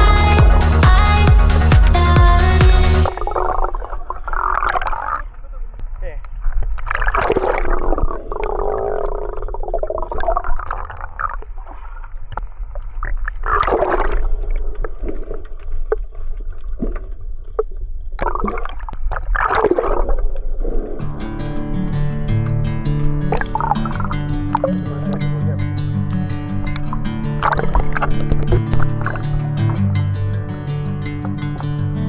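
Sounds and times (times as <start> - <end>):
music: 0.0 - 3.1, 21.0 - 32.0
low rumble: 0.0 - 4.6
seawater gurgling and sloshing: 3.1 - 21.1, 26.8 - 29.8
water gushes: 26.8 - 29.8.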